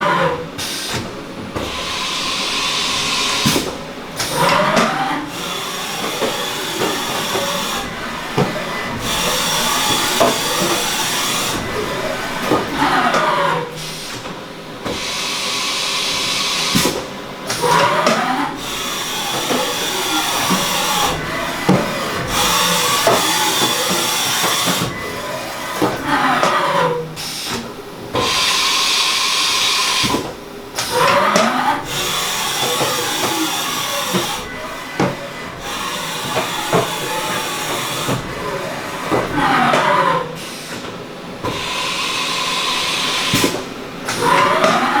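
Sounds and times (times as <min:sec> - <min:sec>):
machine spindle whining: 0:00.0 - 0:45.0.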